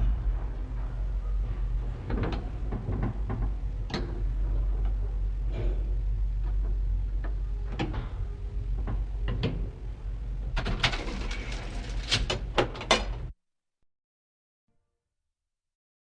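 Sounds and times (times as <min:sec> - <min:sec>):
elevator clicks and knocks: 0:00.0 - 0:05.5, 0:06.4 - 0:09.8
loud clunks and rattles: 0:00.0 - 0:05.8
elevator humming: 0:00.0 - 0:13.3.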